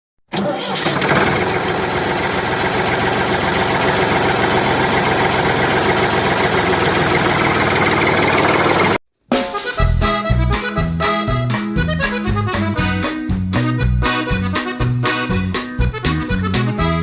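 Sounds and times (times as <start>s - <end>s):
engine idling with knocking: 0.8s - 9.0s.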